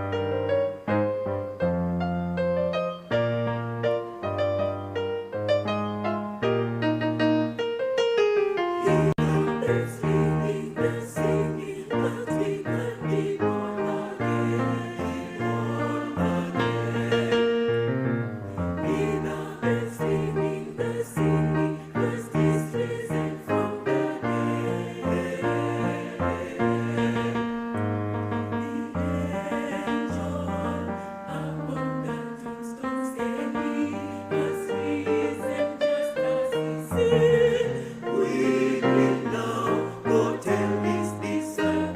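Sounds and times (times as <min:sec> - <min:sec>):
piano accompaniment: 0:00.0 - 0:41.9
choir singing: 0:08.8 - 0:41.9.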